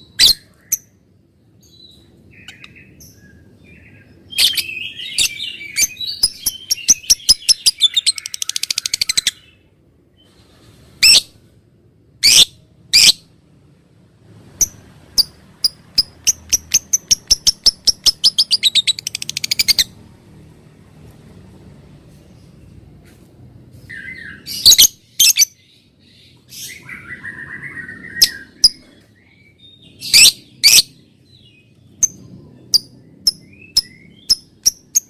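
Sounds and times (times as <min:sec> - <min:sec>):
lovebird chirping and trilling: 0:00.0 - 0:01.0, 0:01.6 - 0:09.6, 0:11.0 - 0:11.3, 0:12.2 - 0:13.3, 0:14.5 - 0:20.0, 0:23.9 - 0:35.0
lovebird harsh calls: 0:14.6 - 0:20.0.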